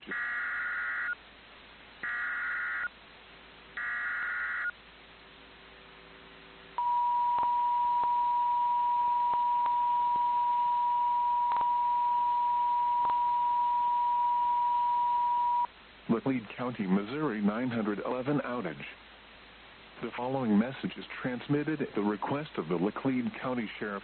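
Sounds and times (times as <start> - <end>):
weather radio alarm tone: 2.0 - 2.9, 6.8 - 15.7.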